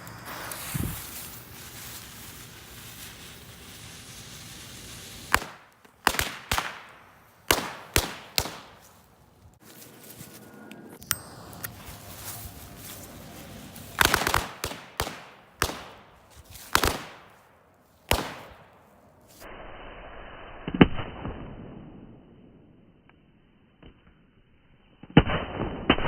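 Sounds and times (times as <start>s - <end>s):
firecrackers exploding: 0.0s - 9.3s, 11.1s - 17.4s, 18.0s - 18.9s.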